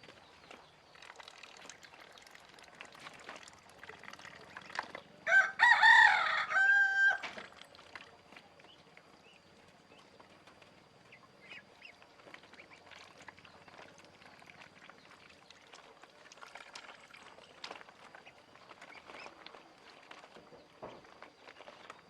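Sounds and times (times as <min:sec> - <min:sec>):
ducklings peeping: 0:08.3 - 0:22.0.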